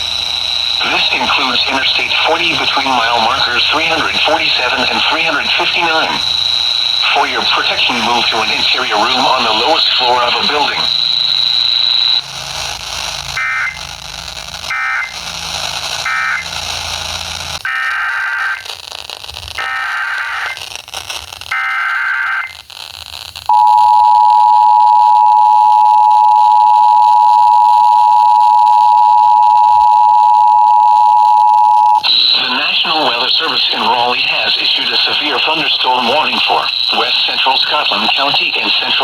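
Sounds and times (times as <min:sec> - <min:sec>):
warbling data bursts: 0:00.0 - 0:12.2, 0:31.7 - 0:39.0
two-tone attention signal: 0:23.5 - 0:32.4.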